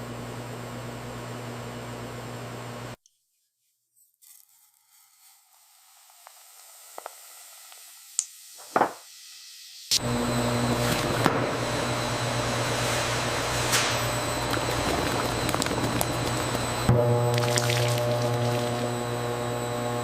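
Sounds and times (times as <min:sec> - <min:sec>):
machinery hum: 0:09.9 - 0:20.0.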